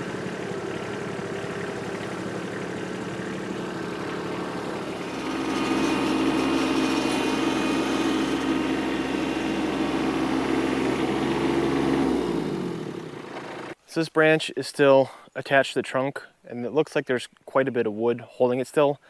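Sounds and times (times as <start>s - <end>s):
tractor diesel engine running: 0.0s - 13.8s.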